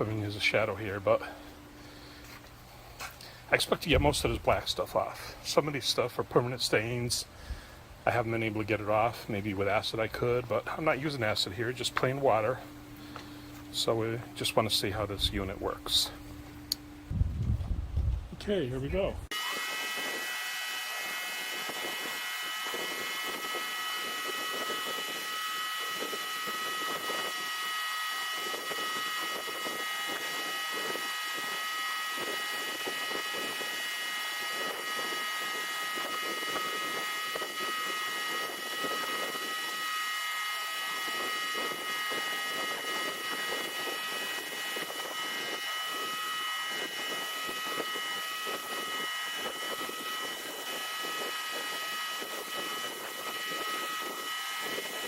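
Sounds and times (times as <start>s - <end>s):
pressure washer high whine: 0.0s - 16.8s, 18.9s - 55.0s.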